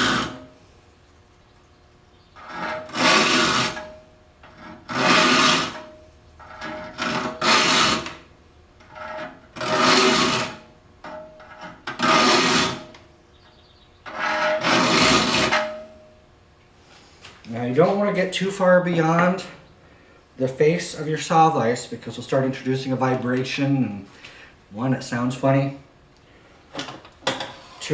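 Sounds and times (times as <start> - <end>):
file rasping on saw teeth: 0.0 - 0.6, 2.4 - 5.9, 6.6 - 8.2, 8.9 - 10.7, 11.6 - 12.9, 14.1 - 15.8.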